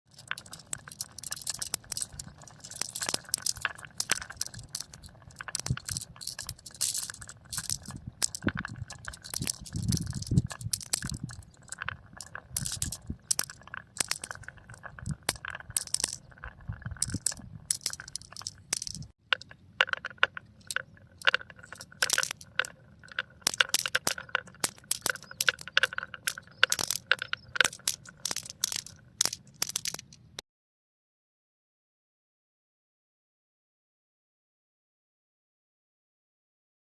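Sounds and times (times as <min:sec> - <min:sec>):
marbles clattering down marble run: 0:00.1 - 0:30.2.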